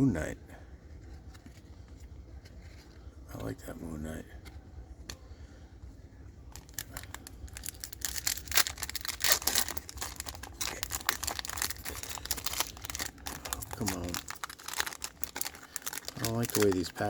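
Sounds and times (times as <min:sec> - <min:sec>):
wrapper crinkling and tearing: 0:06.5 - 0:17.0.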